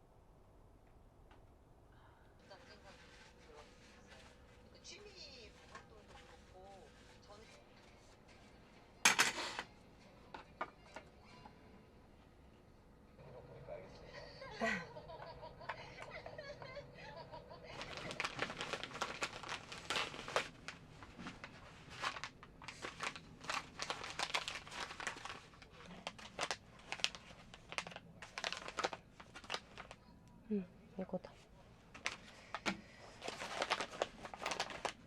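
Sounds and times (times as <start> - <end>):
plastic packaging crinkling: 17.7 - 30.0, 31.9 - 35.0.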